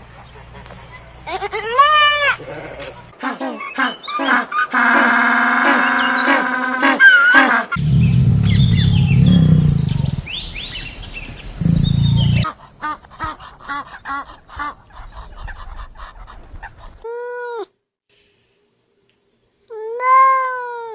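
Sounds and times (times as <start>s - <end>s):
animal chirps: 3.2s - 5.0s, 5.6s - 12.6s.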